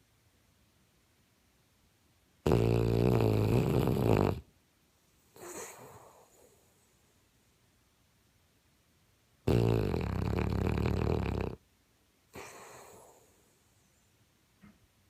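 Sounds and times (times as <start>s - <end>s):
pet snoring: 2.4s - 4.5s, 5.4s - 6.6s, 9.5s - 11.6s, 12.3s - 13.4s.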